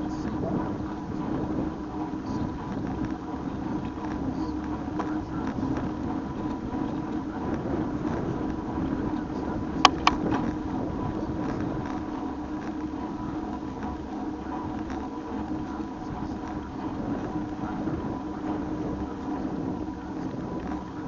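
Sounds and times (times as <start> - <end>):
bike riding on road: 0.0 - 21.0
sharp clicks: 9.8 - 10.5.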